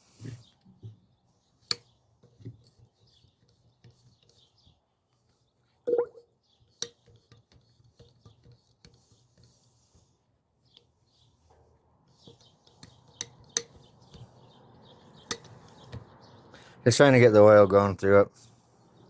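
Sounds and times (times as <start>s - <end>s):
hydraulic tool clicks and taps: 15.3s - 16.1s.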